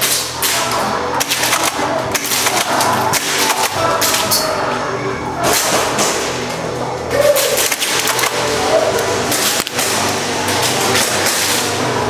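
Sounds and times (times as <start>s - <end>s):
airsoft guns firing: 0.0s - 4.4s, 7.4s - 8.5s, 9.3s - 11.7s
pellets striking surfaces: 0.0s - 4.5s.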